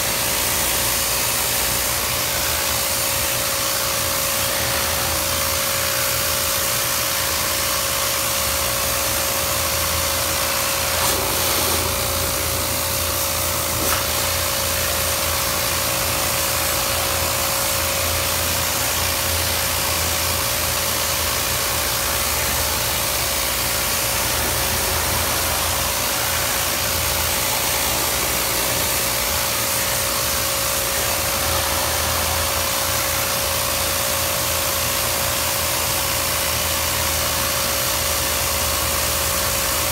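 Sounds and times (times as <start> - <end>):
rush of air: 10.4 - 15.6.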